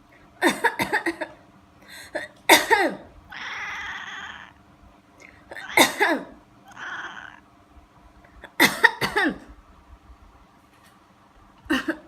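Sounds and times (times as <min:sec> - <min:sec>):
person coughing: 0:00.4 - 0:01.4, 0:02.0 - 0:03.1, 0:05.5 - 0:06.4, 0:08.4 - 0:09.5, 0:11.7 - 0:12.0
cat hissing: 0:03.3 - 0:04.6, 0:05.4 - 0:07.5.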